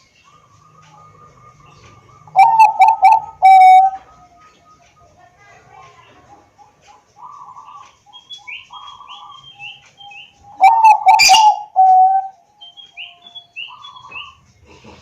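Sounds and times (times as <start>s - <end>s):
birds chirping: 0.0s - 15.0s
dove cooing: 1.0s - 4.1s, 6.2s - 9.8s, 10.5s - 12.3s.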